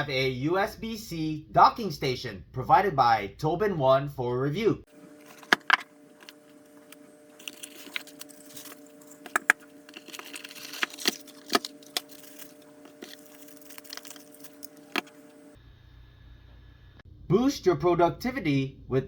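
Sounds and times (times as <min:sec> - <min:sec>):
steady low hum: 0:04.8 - 0:17.4
hard objects clicking and tapping: 0:05.2 - 0:15.5.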